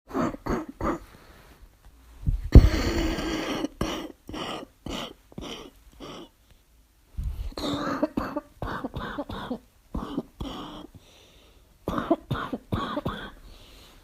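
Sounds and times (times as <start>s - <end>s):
person coughing: 0.1s - 1.1s, 2.5s - 6.4s, 7.6s - 10.9s, 11.9s - 13.4s.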